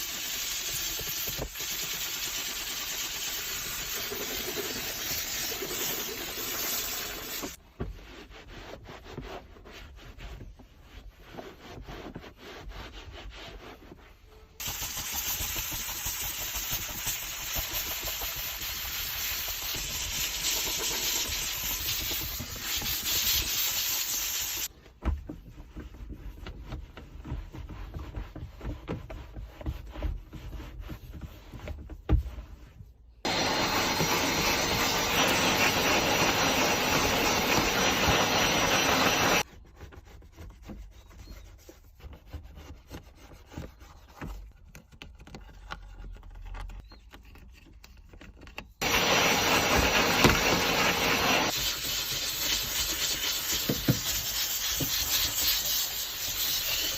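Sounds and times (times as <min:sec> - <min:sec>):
cleaning jet hissing: 0:00.0 - 0:07.6, 0:14.6 - 0:24.7, 0:33.3 - 0:39.4, 0:48.8 - 0:56.9
scrubbing and rubbing: 0:00.2 - 0:24.7, 0:25.4 - 0:47.5, 0:48.8 - 0:56.9.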